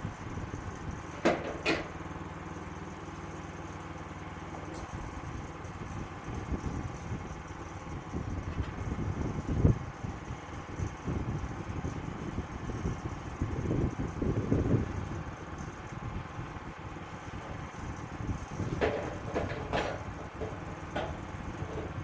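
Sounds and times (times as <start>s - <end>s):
sawmill engine running: 13.2s - 22.0s.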